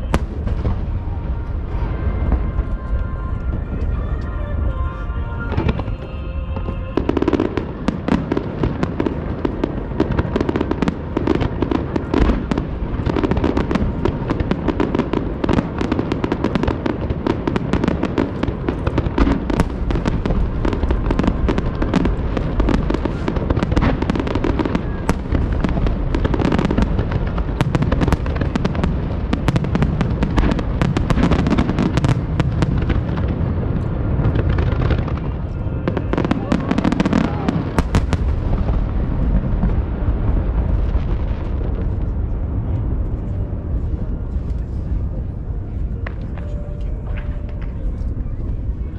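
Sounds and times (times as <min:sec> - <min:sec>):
fireworks bursting and crackling: 0:00.0 - 0:48.9
low rumble of booms: 0:00.0 - 0:48.9.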